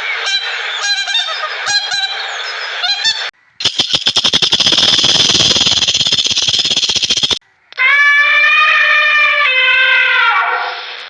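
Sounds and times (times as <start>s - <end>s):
fast rattle of clicks: 3.6s - 7.4s.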